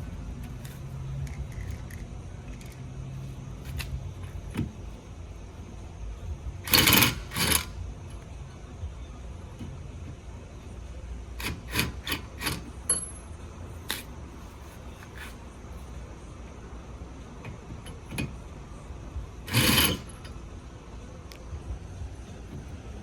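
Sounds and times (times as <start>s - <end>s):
wrench clicks: 6.6s - 7.8s, 11.4s - 13.2s, 19.5s - 20.4s
wrench rasping on lug nuts: 6.6s - 7.8s, 11.4s - 13.2s, 13.9s - 15.4s, 19.4s - 20.4s.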